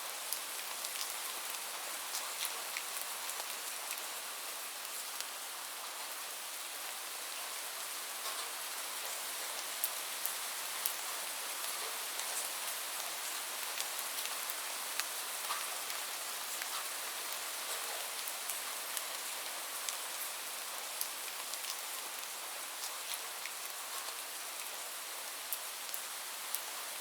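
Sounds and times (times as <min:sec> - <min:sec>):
raindrops ticking on a surface: 0:00.2 - 0:06.0, 0:08.2 - 0:27.0.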